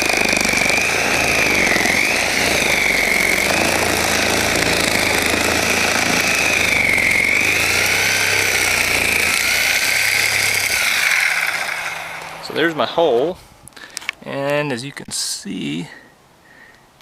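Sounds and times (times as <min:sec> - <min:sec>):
electric saw cutting roof: 0:00.0 - 0:13.4.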